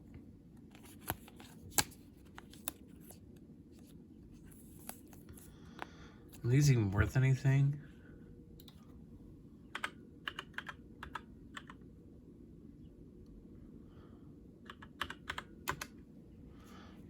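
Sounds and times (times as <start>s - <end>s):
keyboard typing: 9.7s - 11.8s, 14.6s - 15.9s.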